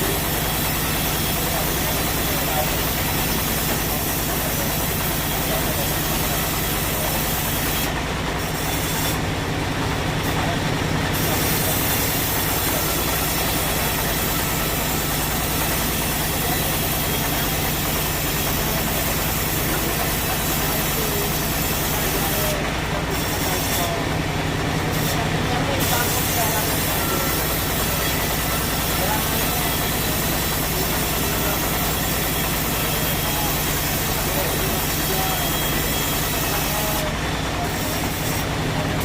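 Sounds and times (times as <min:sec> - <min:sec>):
sawmill machinery humming: 0:00.0 - 0:39.0.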